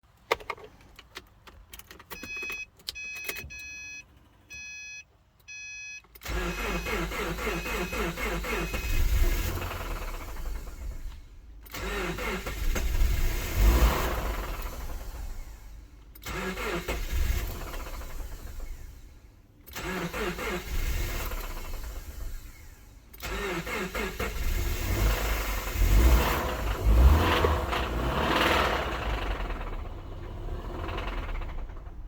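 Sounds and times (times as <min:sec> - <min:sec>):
dashboard warning chime beeping: 0:02.1 - 0:09.1
car engine cranking and running: 0:06.1 - 0:32.0.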